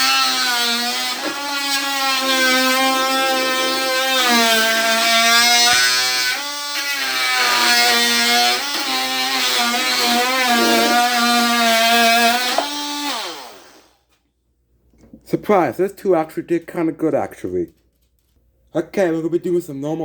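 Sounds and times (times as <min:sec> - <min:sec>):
tool winding down: 0:00.0 - 0:13.9
oscillating tool buzzing whine: 0:02.3 - 0:11.6.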